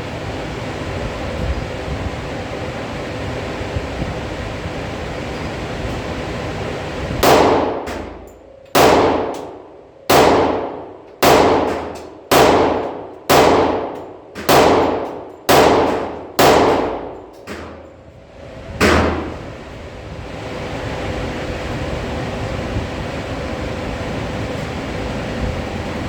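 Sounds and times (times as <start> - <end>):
pistol shots echoing indoors: 7.2 - 17.9, 18.8 - 19.4.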